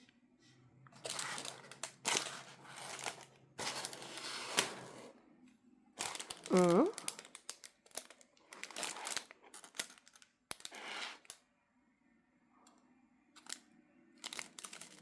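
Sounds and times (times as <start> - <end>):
plastic bags rustling: 1.0 - 5.0, 6.0 - 11.4, 14.2 - 15.0.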